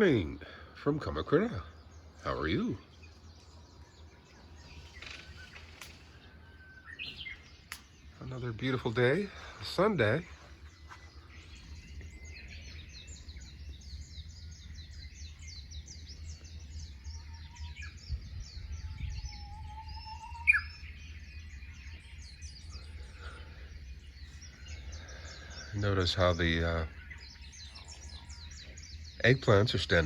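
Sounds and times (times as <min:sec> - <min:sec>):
low steady rumble: 0:00.0 - 0:30.0
small birds chirping: 0:00.0 - 0:30.0
sharp loud bird call: 0:18.8 - 0:21.2.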